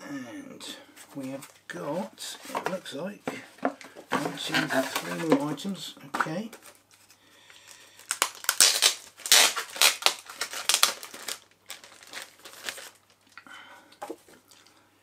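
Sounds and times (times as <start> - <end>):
packaging crinkling and rustling: 3.7 - 13.4.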